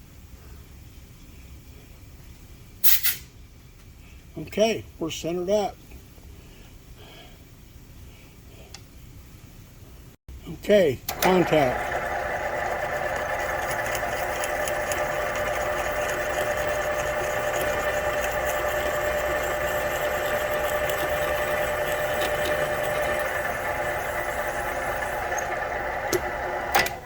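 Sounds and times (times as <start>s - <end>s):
sharp click: 2.8s - 3.3s
machine drilling metal: 11.1s - 27.0s.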